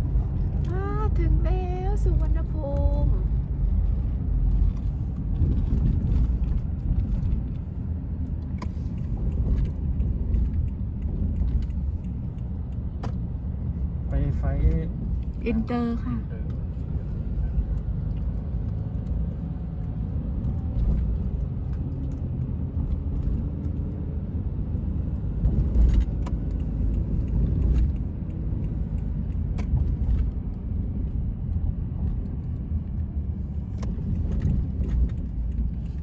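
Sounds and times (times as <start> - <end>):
road vehicle rumble: 0.0 - 36.0
light clicks and rattles: 4.5 - 13.4.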